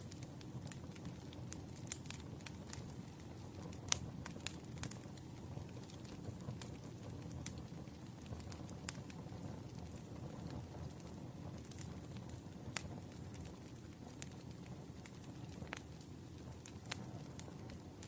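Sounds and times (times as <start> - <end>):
fire crackling and popping: 0.0 - 18.0
wood fire rumble: 0.0 - 18.0.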